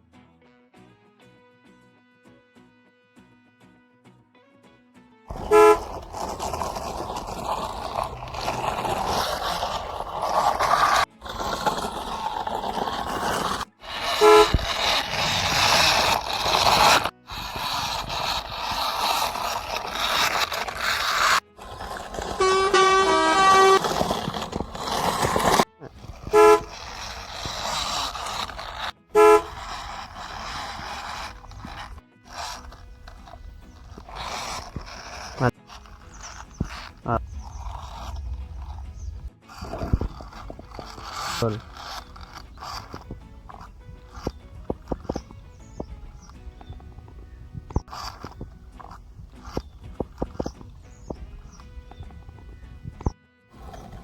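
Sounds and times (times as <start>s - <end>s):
truck horn honking: 5.3s - 7.0s, 13.9s - 17.0s, 22.0s - 25.6s, 26.2s - 28.0s, 29.2s - 30.9s
noisy vehicle sound: 5.3s - 54.0s.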